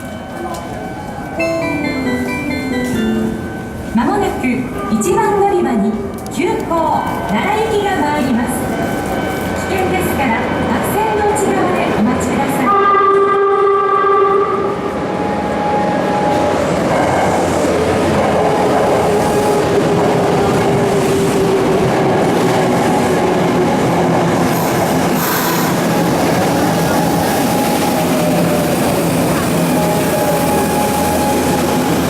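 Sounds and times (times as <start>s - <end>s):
train rail rumble: 0.0s - 32.0s
train horn: 12.6s - 14.9s.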